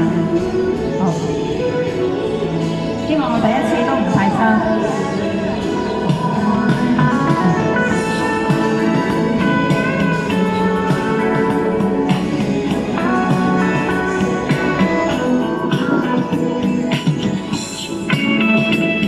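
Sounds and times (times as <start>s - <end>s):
instrumental music with steady beat: 4.8s - 19.0s.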